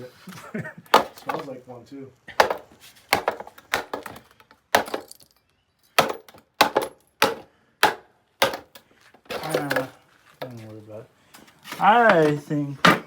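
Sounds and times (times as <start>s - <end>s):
knocks and clanks on hard objects: 0.9s - 1.5s, 2.4s - 5.3s, 6.0s - 10.6s, 12.0s - 13.0s.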